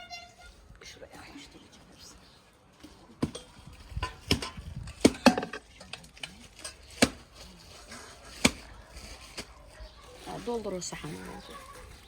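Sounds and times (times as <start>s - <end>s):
kitchen utensils knocking: 3.2s - 5.6s.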